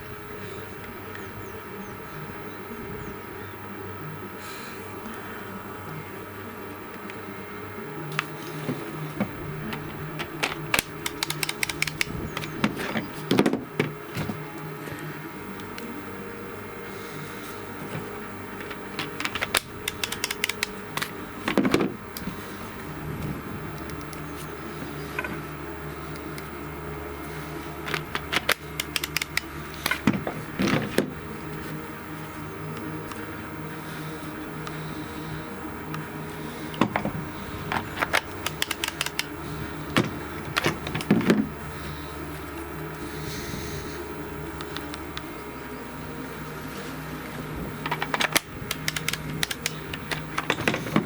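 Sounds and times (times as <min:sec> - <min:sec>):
steady low hum: 0:00.0 - 0:51.0
power tools clicking and knocking: 0:08.1 - 0:14.4, 0:17.8 - 0:22.3, 0:27.8 - 0:31.2, 0:36.7 - 0:41.5, 0:47.8 - 0:51.0
plastic clicks and knocks: 0:09.2 - 0:14.4, 0:18.6 - 0:22.0.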